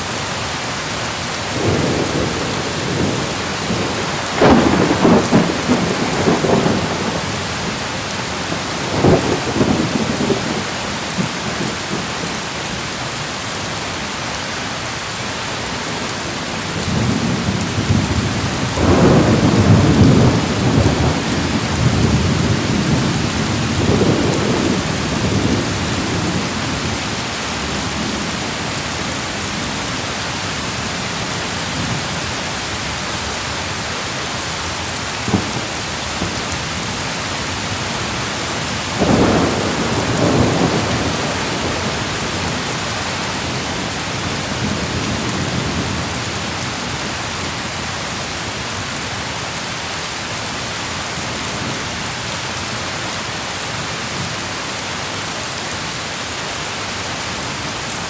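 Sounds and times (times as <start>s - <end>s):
steady rain falling: 0.0s - 58.0s
thunder rumbling: 1.6s - 12.4s, 16.6s - 29.3s, 35.2s - 46.3s.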